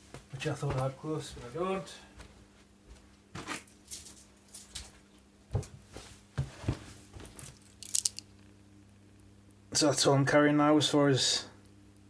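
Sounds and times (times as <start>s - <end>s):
keys rustling and knocking: 3.5s - 5.0s, 7.2s - 8.3s
sharp metallic key clicks: 7.7s - 8.3s.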